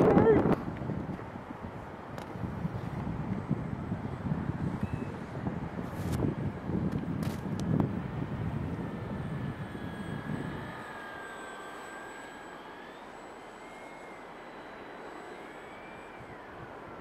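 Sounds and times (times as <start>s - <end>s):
wind buffeting microphone: 0.0s - 11.2s
model airplane motor whining: 0.0s - 17.0s.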